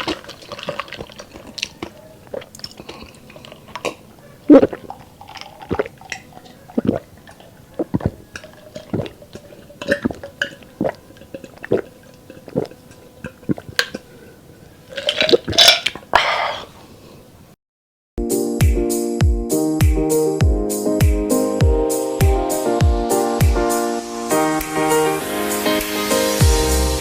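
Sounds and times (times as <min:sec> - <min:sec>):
wet chewing and mouth smacks: 0:00.0 - 0:16.7.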